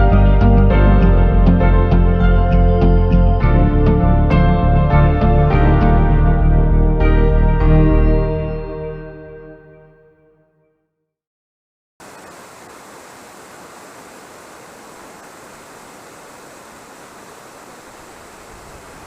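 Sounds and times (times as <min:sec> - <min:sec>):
waterfall rushing: 0:12.0 - 0:19.0.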